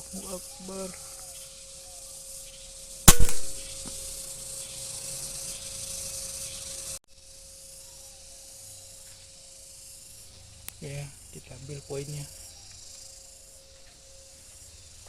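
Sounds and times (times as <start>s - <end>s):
air rifle shot: 3.1s - 4.0s.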